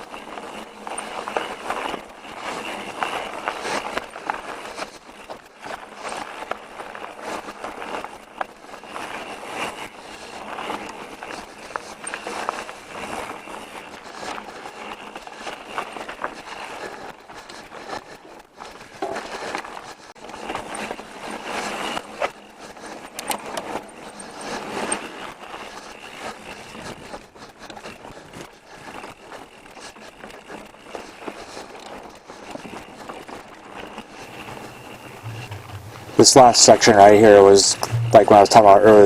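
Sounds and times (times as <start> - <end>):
bike tyres on dirt: 0.0 - 39.0
bike clicking and knocking: 34.3 - 36.6.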